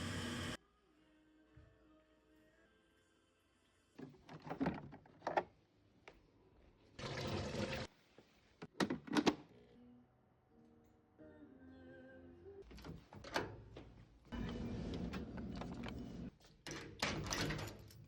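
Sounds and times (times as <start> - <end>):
kitchen knocks and clatters: 15.1 - 18.0.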